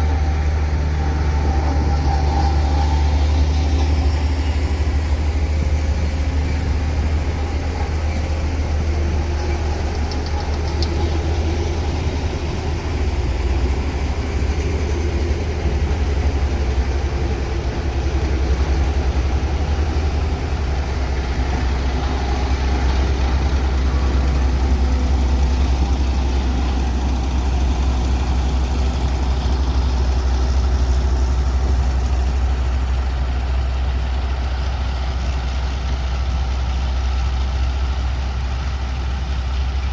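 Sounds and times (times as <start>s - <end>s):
diesel engine humming: 0.0s - 39.9s.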